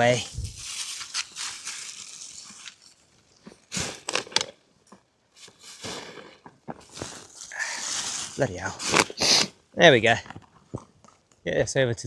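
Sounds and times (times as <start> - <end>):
litter crinkling: 0.0 - 4.5, 5.4 - 9.5.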